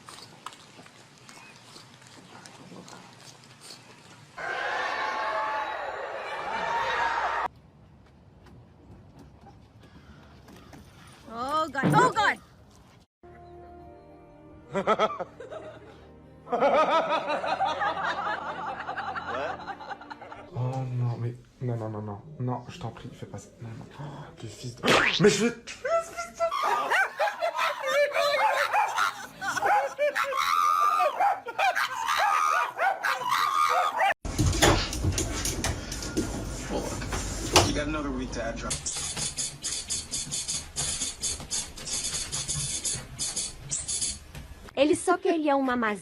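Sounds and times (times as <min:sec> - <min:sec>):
laughter: 0:14.7 - 0:20.5, 0:26.5 - 0:30.2, 0:31.4 - 0:32.0.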